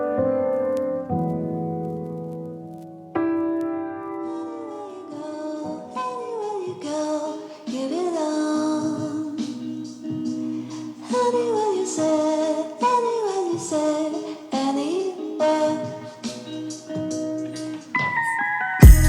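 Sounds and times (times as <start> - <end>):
woman singing: 4.2 - 19.0
instrumental accompaniment: 15.4 - 19.0.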